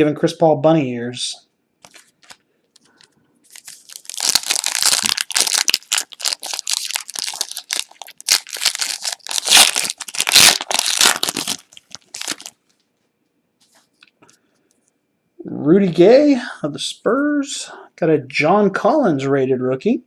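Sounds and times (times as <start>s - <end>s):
plastic wrapper tearing and crinkling: 1.8s - 12.6s.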